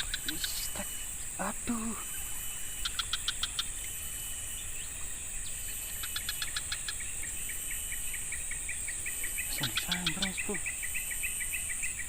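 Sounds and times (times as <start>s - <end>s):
soft ticks: 0.0s - 0.8s
rapid chirping notes: 0.0s - 5.0s, 5.6s - 10.7s
insects droning: 0.0s - 12.0s.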